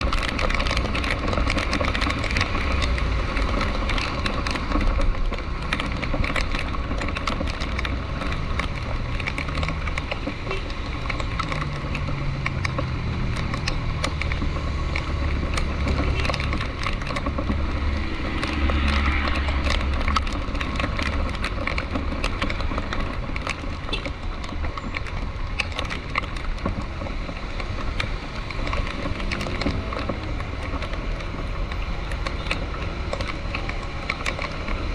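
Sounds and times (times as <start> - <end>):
engine and road noise: 0.0 - 34.9
rain on a vehicle: 0.0 - 34.9.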